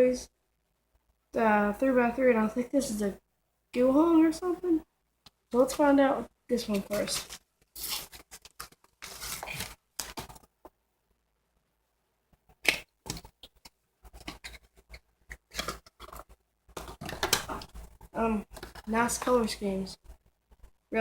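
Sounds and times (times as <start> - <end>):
packaging crinkling and ripping: 6.8 - 10.5, 14.1 - 19.3.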